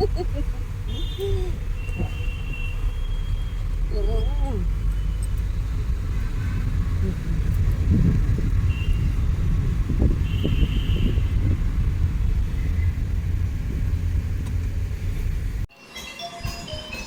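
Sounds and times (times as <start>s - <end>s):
car road and engine noise: 0.0s - 15.7s.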